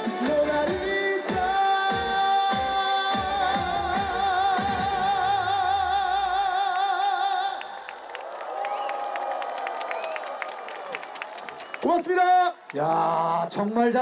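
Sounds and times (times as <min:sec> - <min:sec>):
man singing with vibrato: 0:00.0 - 0:08.0, 0:12.2 - 0:14.0
audience clapping: 0:06.5 - 0:14.0.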